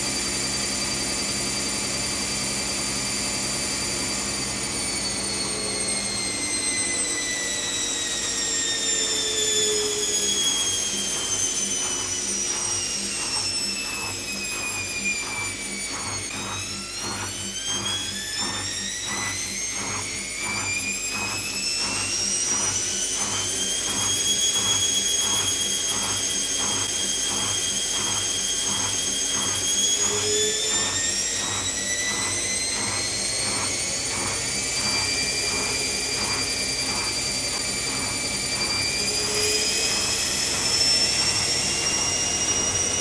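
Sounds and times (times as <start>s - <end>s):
washing machine motor whining: 0.0s - 43.0s
regular pulsing: 9.0s - 43.0s.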